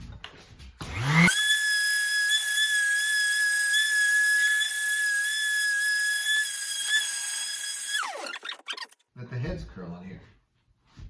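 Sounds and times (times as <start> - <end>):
small motor whining: 0.9 - 9.0.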